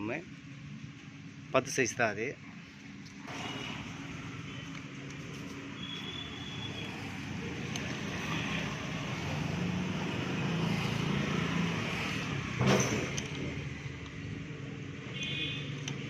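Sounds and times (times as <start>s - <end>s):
vehicle passing: 6.3s - 14.6s.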